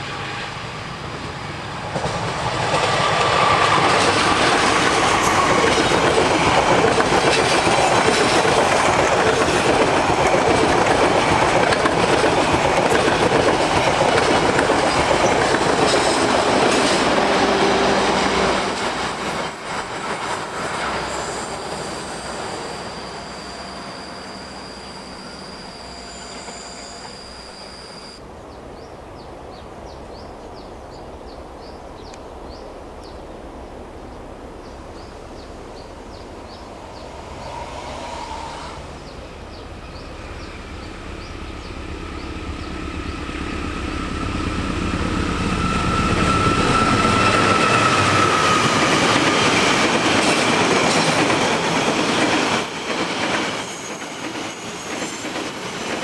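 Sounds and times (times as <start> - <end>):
diesel train passing: 0.0 - 28.4, 32.3 - 56.0
wheels clattering over rail joints: 1.9 - 28.2
high ringing tone: 17.0 - 28.2, 40.4 - 49.2.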